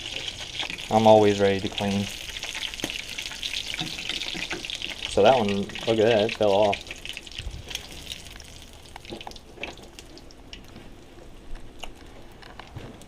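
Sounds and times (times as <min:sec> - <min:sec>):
fish frying in oil: 0:00.0 - 0:11.1.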